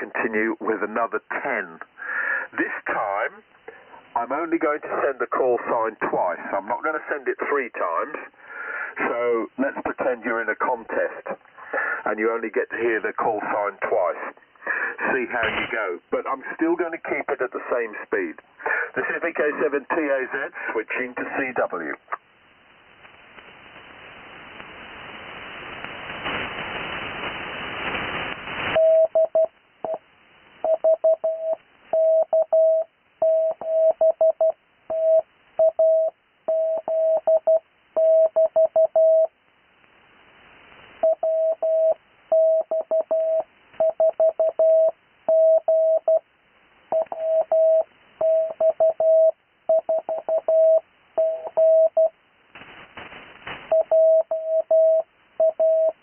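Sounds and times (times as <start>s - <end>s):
radio hiss: 0.0s - 30.7s, 40.0s - 42.4s, 50.5s - 56.0s
morse code tone: 30.7s - 39.3s, 41.0s - 46.2s, 46.9s - 52.1s, 53.7s - 56.0s.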